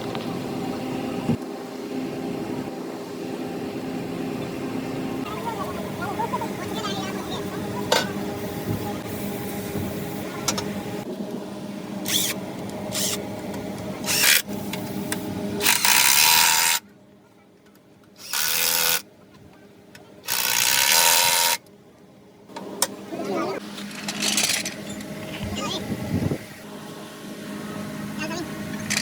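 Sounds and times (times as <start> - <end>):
mechanical hum: 0.0 - 29.0
power tool running: 12.0 - 16.8, 18.2 - 19.0, 20.2 - 21.6.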